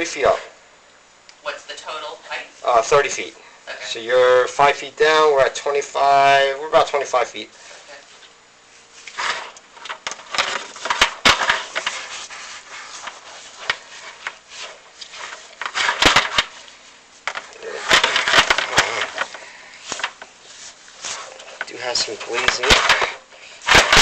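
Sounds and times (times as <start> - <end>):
camera scraping flue walls: 9.0 - 24.0.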